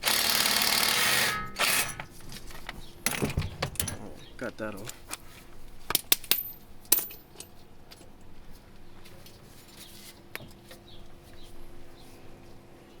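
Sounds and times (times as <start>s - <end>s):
metal tools clinking: 1.3s - 5.2s, 5.9s - 7.5s.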